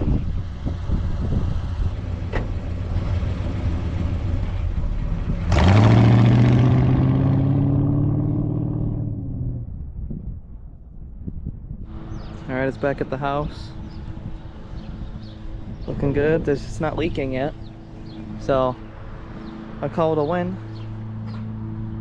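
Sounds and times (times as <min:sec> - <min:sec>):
car engine accelerating: 0:00.0 - 0:10.0, 0:11.9 - 0:22.0
road and wind noise: 0:00.0 - 0:22.0.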